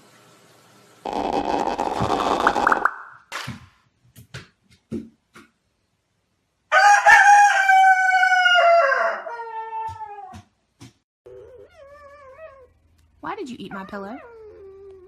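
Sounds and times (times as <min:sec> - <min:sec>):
rooster crowing: 0:06.7 - 0:10.0.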